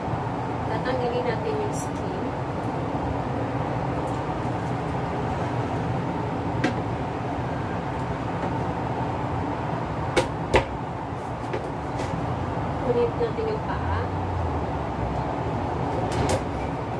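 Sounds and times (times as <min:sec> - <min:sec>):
steady background hum: 0:00.0 - 0:16.9.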